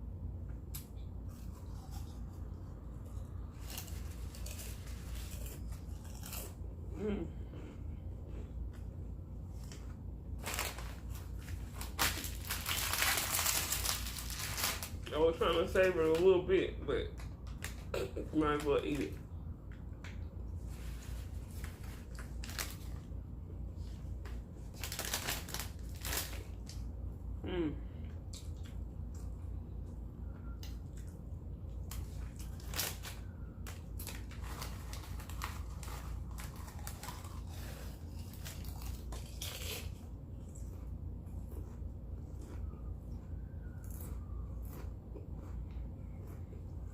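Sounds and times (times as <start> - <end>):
steady low hum: 0.0 - 46.9
chewing a burger: 0.6 - 15.0, 27.5 - 46.9.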